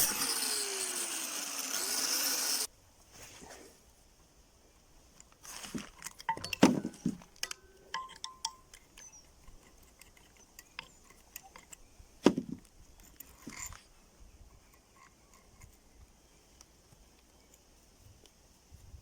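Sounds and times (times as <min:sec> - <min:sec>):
metal parts clinking and knocking: 0:06.0 - 0:11.8, 0:12.4 - 0:13.9.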